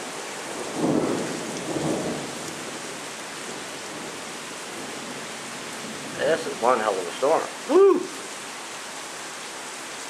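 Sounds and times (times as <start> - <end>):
heavy rain: 0.0 - 10.0
thunder rumbling: 0.5 - 2.8.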